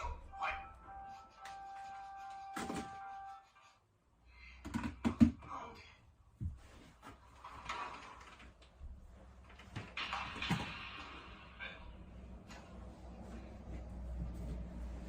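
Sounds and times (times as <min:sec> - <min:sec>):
background music: 0:00.0 - 0:03.6.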